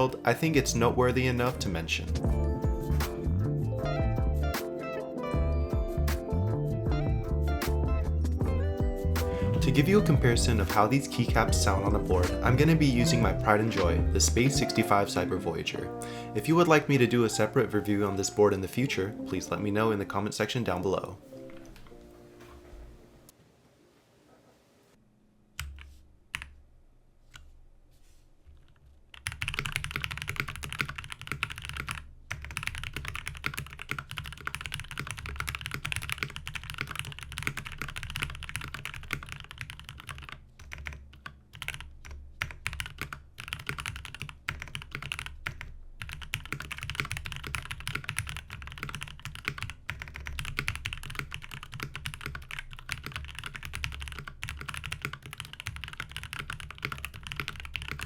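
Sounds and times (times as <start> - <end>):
mechanical keyboard typing: 28.7 - 58.0.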